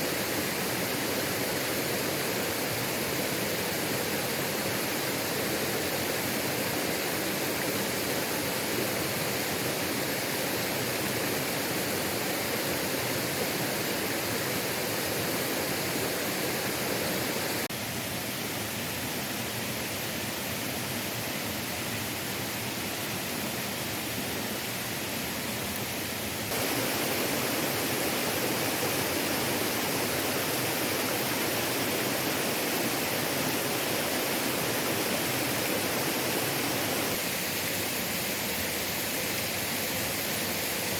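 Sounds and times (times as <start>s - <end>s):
waterfall rushing: 0.0s - 17.7s, 26.5s - 40.5s.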